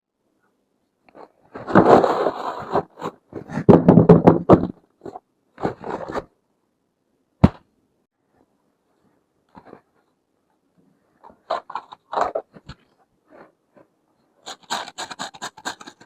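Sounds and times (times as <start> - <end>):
packaging rustling and scraping: 1.2 - 3.7, 5.1 - 6.3, 11.2 - 13.6.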